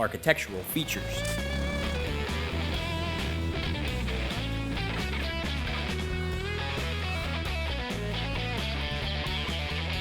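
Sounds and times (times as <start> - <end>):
steady bass: 0.6 - 8.6
electric guitar music: 0.6 - 10.0.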